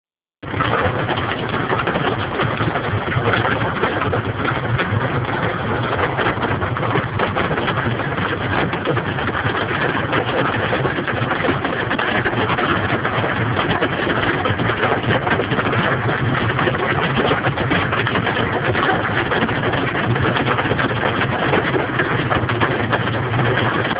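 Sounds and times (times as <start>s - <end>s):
heavy rain on a car roof: 0.4s - 23.9s.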